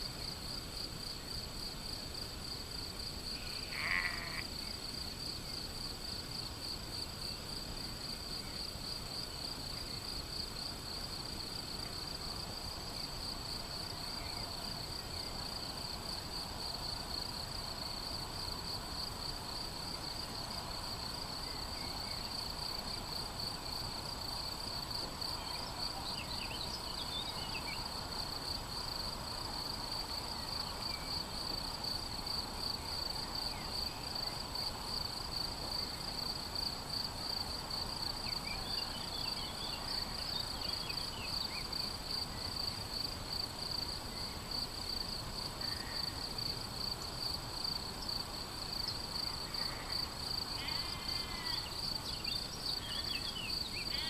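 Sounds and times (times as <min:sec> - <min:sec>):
crickets chirping: 0:00.0 - 0:54.0
low steady background hiss: 0:00.0 - 0:54.0
faint short bird calls: 0:03.4 - 0:04.4.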